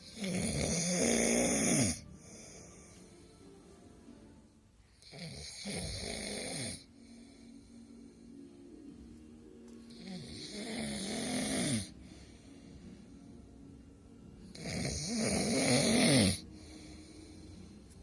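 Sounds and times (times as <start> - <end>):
loud snoring: 0.0 - 2.1, 5.0 - 6.9, 9.9 - 12.0, 14.5 - 16.5
quiet breathing: 0.0 - 18.0.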